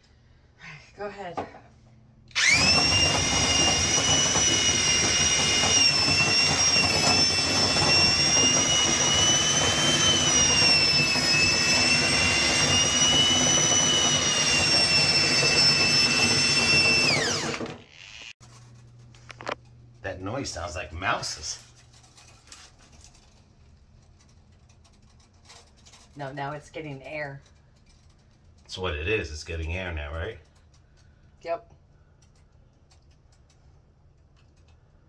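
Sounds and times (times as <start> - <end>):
battery drill whining: 2.3 - 18.4.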